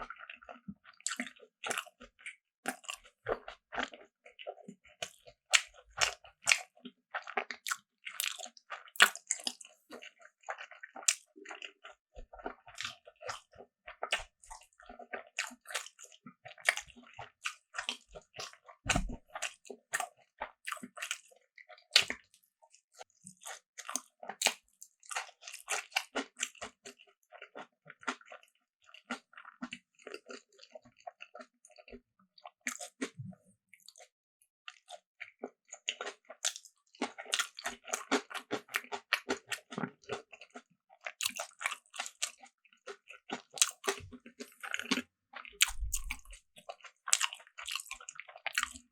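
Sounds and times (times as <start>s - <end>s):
wet chewing: 0.1s - 21.3s, 23.1s - 31.9s, 32.6s - 34.1s, 34.7s - 48.9s
crunchy bites: 45.6s - 46.4s.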